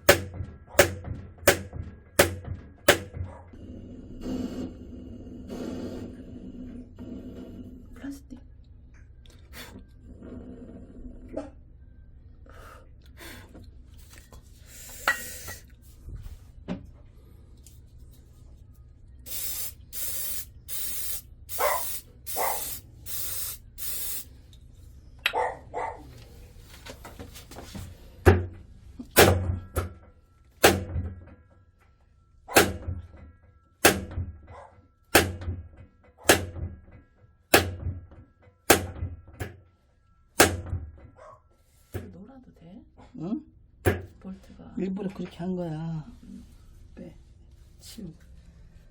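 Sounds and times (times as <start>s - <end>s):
hammer knocks on metal: 0.0s - 3.4s, 33.8s - 34.4s, 35.2s - 36.8s, 37.5s - 38.1s, 38.7s - 39.6s, 40.4s - 40.9s
spray can hissing: 19.3s - 24.3s.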